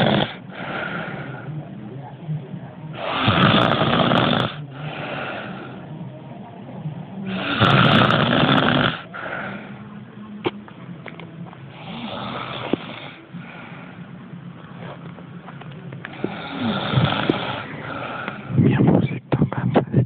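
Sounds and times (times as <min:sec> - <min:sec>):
person snoring: 0:00.0 - 0:01.5, 0:03.0 - 0:05.8, 0:07.3 - 0:09.8, 0:11.7 - 0:13.7, 0:16.1 - 0:18.6
soft breath sound: 0:00.0 - 0:01.9, 0:04.6 - 0:06.2, 0:09.0 - 0:10.3, 0:11.7 - 0:15.2, 0:16.0 - 0:19.8.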